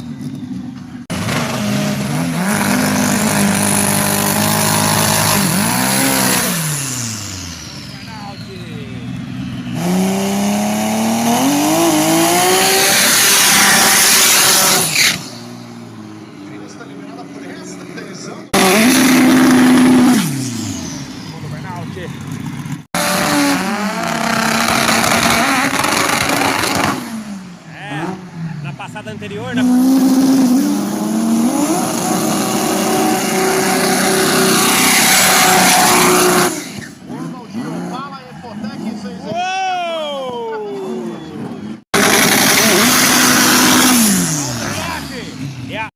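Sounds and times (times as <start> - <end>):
engine revving high: 1.1 - 15.6, 16.5 - 22.1, 22.8 - 39.2, 40.8 - 45.9
spinning tyres hissing: 1.2 - 15.9, 42.0 - 45.6.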